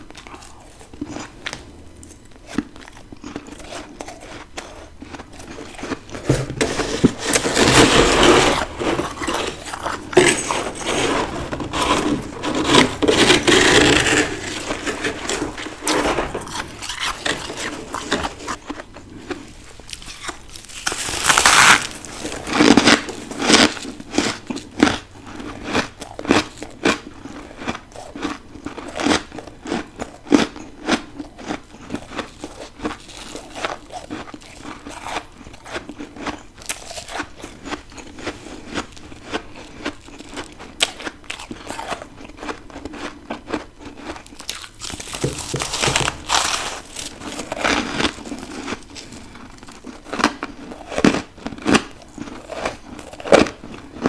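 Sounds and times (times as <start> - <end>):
crunching ice while chewing: 0.0 - 54.0.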